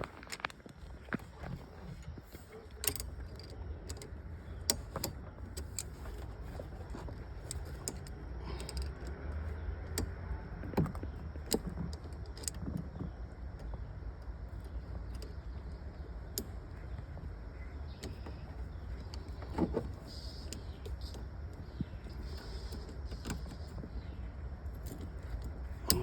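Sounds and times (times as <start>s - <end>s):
low steady rumble: 0.0s - 26.0s
small metallic clicks and taps: 2.3s - 17.2s, 24.7s - 26.0s.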